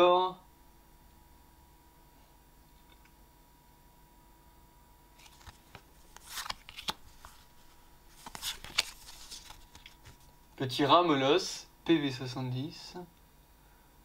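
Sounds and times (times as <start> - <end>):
trading cards rustling: 5.2 - 10.3.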